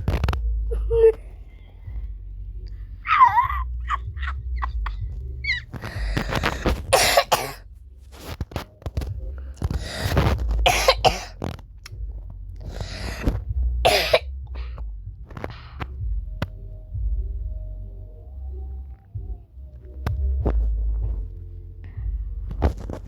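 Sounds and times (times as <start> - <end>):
person wheezing and coughing: 3.0 - 7.6, 9.8 - 11.4, 12.8 - 14.3.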